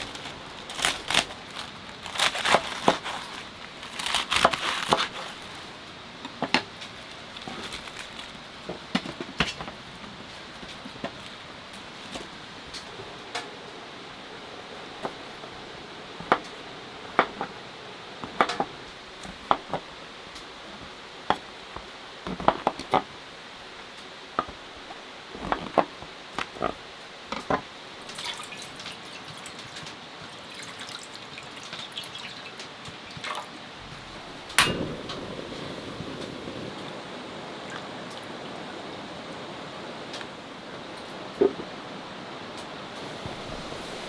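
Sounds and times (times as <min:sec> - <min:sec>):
liquid being poured: 0:28.1 - 0:33.5
dishes and utensils clinking: 0:34.5 - 0:35.2.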